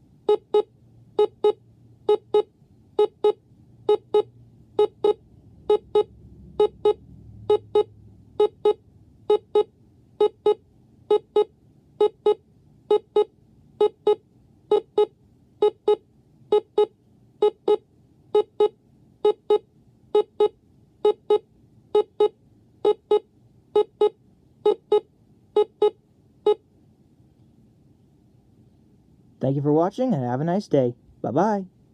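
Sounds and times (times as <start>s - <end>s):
alarm clock double beeps: 0.3s - 17.8s, 22.0s - 23.2s, 23.8s - 26.6s.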